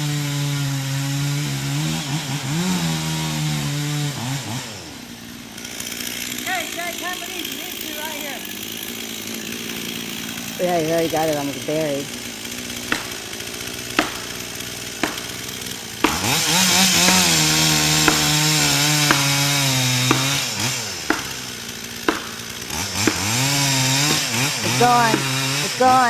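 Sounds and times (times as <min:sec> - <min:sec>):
chainsaw cutting tree trunk: 0:00.0 - 0:26.0
sharp knocks: 0:12.8 - 0:25.6.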